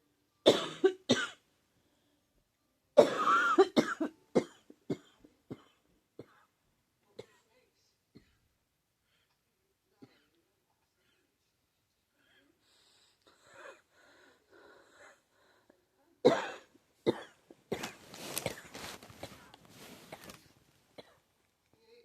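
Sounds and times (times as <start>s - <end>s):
person coughing: 0.5s - 1.4s, 3.0s - 5.7s, 16.3s - 20.4s.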